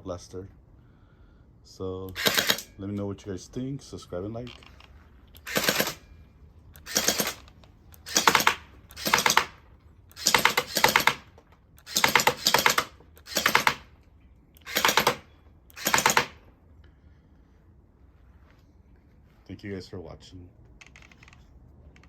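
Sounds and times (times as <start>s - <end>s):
toy blaster firing bursts: 2.2s - 2.7s, 5.4s - 6.0s, 6.8s - 7.4s, 8.0s - 13.9s, 14.6s - 16.4s.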